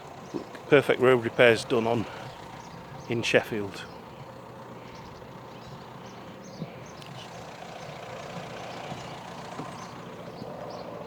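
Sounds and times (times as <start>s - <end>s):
distant vehicle engine: 0.0s - 11.0s.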